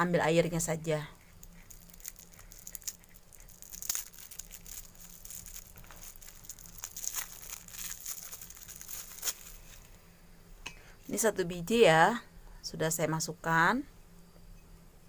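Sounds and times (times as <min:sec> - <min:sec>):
wrapping rustling and crackling: 0:01.2 - 0:10.0.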